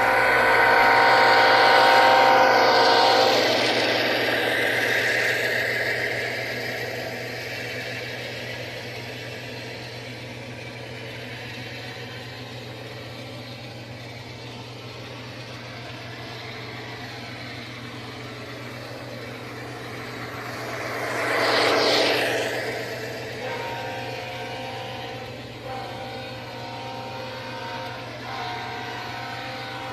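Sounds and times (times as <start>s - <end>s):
diesel locomotive engine running: 0.0s - 29.9s.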